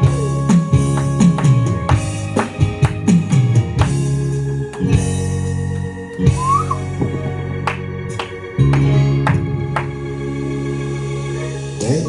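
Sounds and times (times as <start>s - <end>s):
drum kit: 0.0s - 5.5s, 6.2s - 10.0s
keyboard chords: 0.0s - 12.0s.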